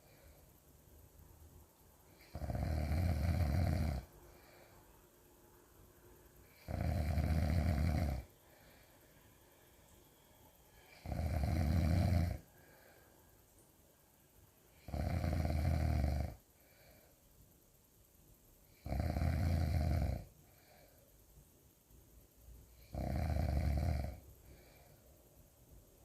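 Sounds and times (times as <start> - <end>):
loud snoring: 2.2 - 4.1, 6.5 - 8.3, 10.9 - 12.5, 14.8 - 16.4, 18.8 - 20.3, 22.8 - 24.2.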